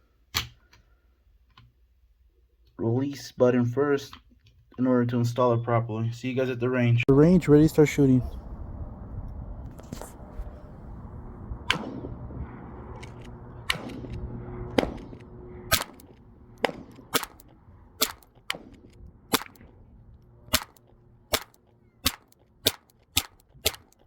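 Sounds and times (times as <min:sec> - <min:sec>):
low hum: 0:06.9 - 0:24.0
pistol shots: 0:11.7 - 0:12.1, 0:13.0 - 0:19.8, 0:20.5 - 0:24.0.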